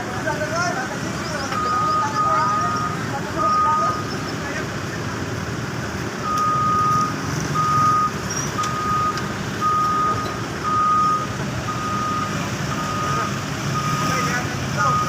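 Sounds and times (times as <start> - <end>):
diesel engines running: 0.0 - 15.0
reversing alarm beeping: 1.2 - 4.4, 6.2 - 15.0.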